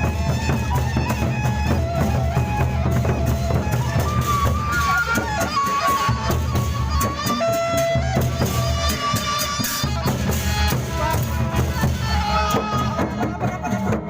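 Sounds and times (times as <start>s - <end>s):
held high melody line: 0.0s - 13.8s
big drums beating: 0.0s - 14.0s.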